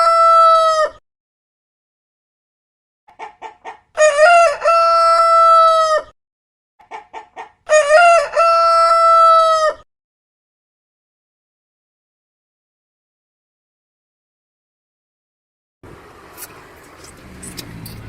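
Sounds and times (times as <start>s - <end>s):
rooster crowing: 0.0s - 1.0s, 4.0s - 6.1s, 7.7s - 9.8s.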